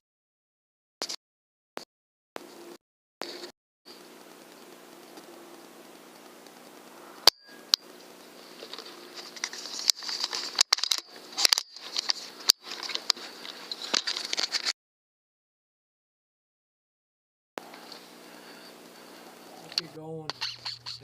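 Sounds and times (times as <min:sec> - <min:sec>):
rustling handling noise: 0:03.2 - 0:14.7
steady electronic hum: 0:03.9 - 0:12.8
sharp clicks: 0:04.0 - 0:08.1.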